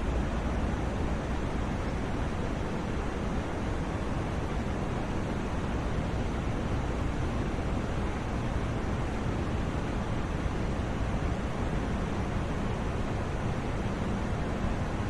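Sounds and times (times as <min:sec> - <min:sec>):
white noise hiss: 0:00.0 - 0:15.0.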